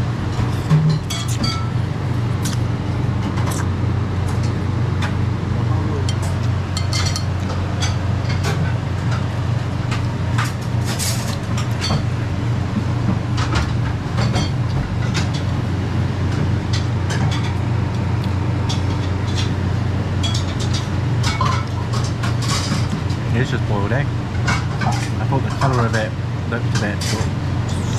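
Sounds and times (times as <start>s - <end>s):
restaurant background hum: 0.0s - 27.9s
utensils clinking against bowl: 6.1s - 8.6s.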